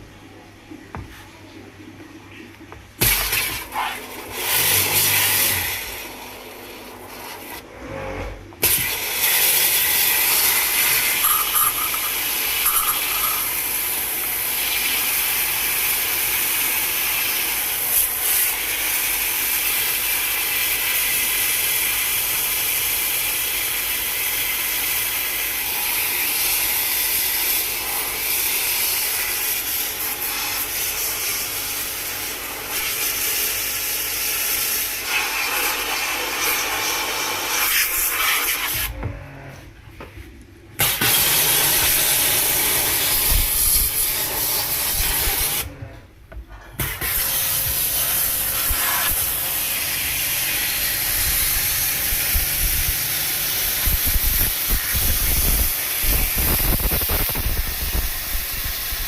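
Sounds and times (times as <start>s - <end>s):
loud steady hiss: 47.0s - 59.0s.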